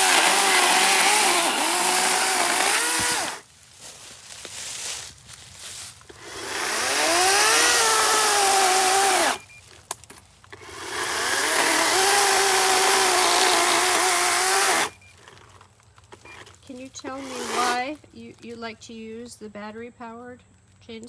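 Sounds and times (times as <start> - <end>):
electric chainsaw cutting wood: 0.0 - 3.5, 6.1 - 9.5, 10.6 - 15.5, 16.2 - 18.0.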